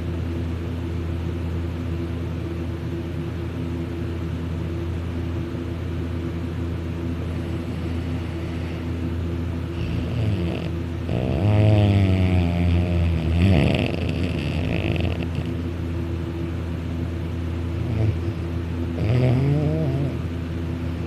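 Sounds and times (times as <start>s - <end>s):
man snoring: 9.7s - 15.5s, 17.8s - 20.2s.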